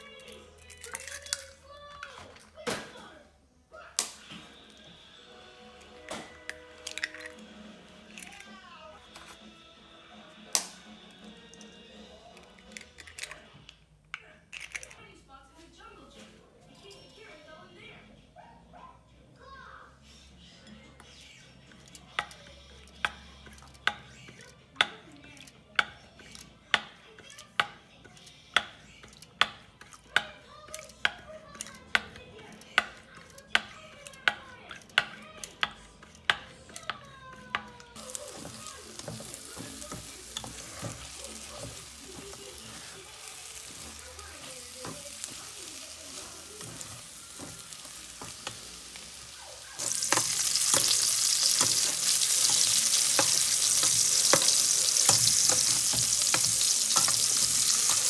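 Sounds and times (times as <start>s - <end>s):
soft knocks of stirring: 37.5s - 58.0s
food sizzling in hot pan: 38.0s - 58.0s.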